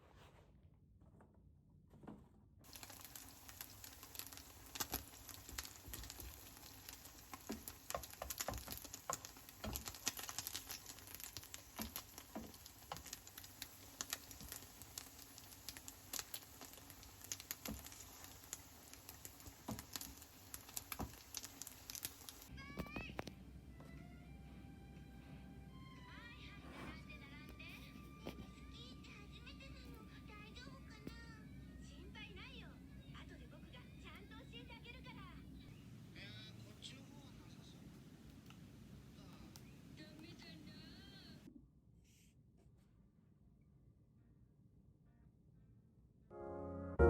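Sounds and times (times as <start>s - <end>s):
faint hiss: 2.7s - 22.5s.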